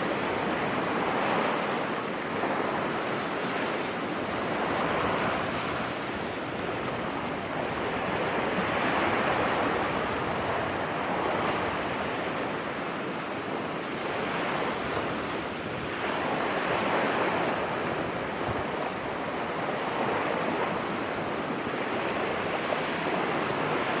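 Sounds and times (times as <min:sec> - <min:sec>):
waves breaking on beach: 0:00.0 - 0:24.0
wind on microphone: 0:14.5 - 0:24.0.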